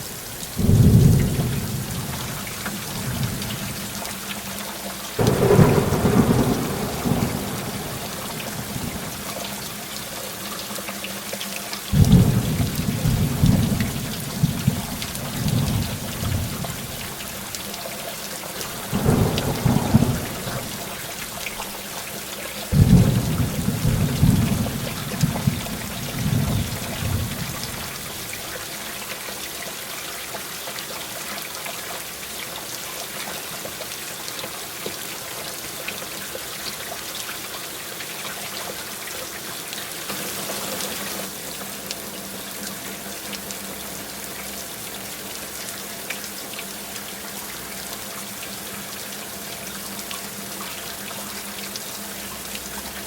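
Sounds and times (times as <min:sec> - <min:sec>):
heavy rain falling: 0:00.0 - 0:53.0
rumble of thunder: 0:00.6 - 0:03.9, 0:05.2 - 0:09.4, 0:12.0 - 0:17.2, 0:18.8 - 0:21.2, 0:22.7 - 0:28.4.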